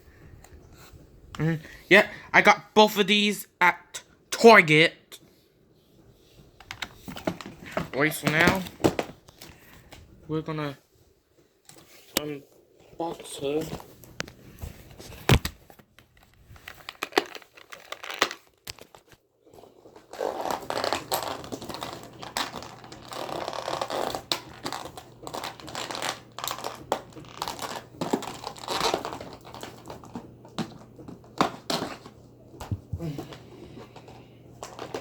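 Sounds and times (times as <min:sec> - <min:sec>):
packaging crinkling: 0:15.3 - 0:32.3.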